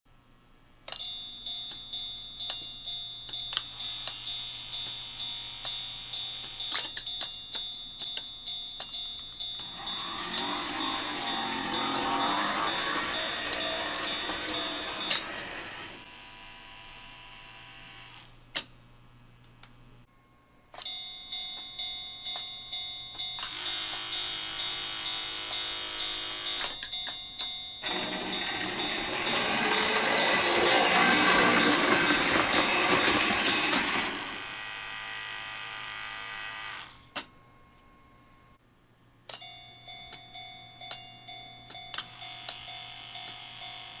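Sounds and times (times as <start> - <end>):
crossing signal bell ringing: 1.0 - 16.0, 20.9 - 34.2
model train motor whirring: 9.6 - 18.3, 27.8 - 37.0
wheels clattering over track: 27.8 - 34.3.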